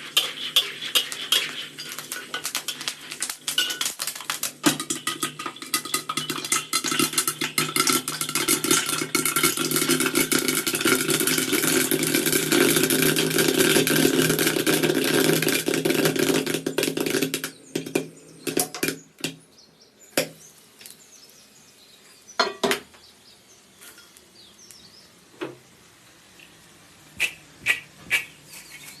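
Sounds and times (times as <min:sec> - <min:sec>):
popcorn kernels popping: 0:00.0 - 0:19.4.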